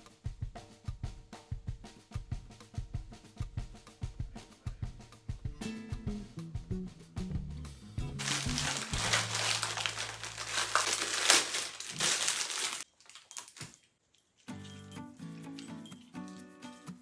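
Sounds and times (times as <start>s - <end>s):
background music: 5.6s - 12.2s
packaging crinkling: 8.2s - 13.9s.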